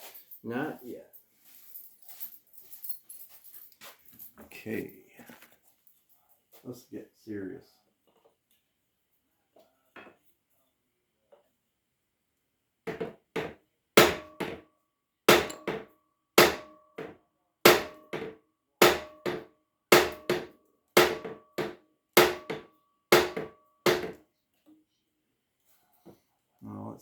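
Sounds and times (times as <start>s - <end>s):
hammer striking metal: 12.9s - 14.6s, 15.3s - 17.1s, 17.7s - 24.2s
metal ringing: 15.3s - 17.1s.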